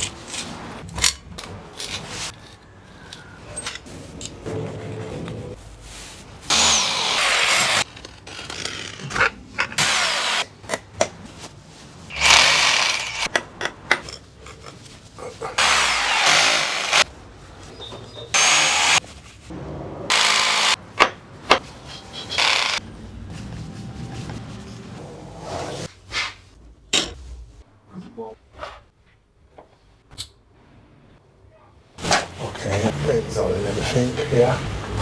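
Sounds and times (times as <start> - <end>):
power drill running: 6.5 - 7.8, 9.8 - 10.4, 12.1 - 13.2, 15.6 - 17.0, 18.4 - 19.0, 20.1 - 20.8, 22.4 - 22.8.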